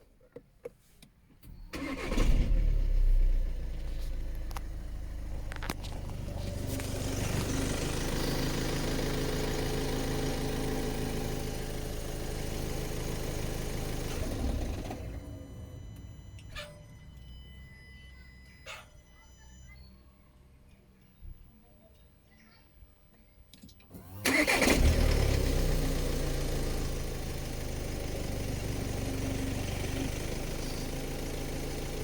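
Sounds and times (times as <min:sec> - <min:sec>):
diesel engine starting and idling: 0:01.4 - 0:17.7, 0:23.8 - 0:32.0.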